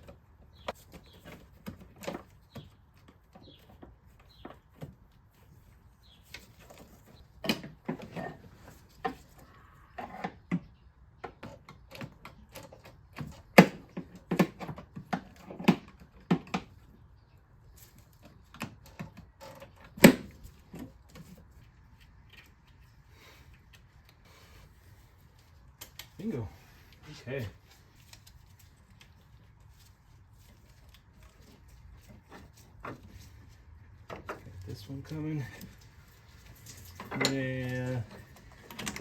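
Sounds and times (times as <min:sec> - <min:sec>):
hand tools clicking and knocking: 0:10.0 - 0:16.9, 0:30.6 - 0:39.0.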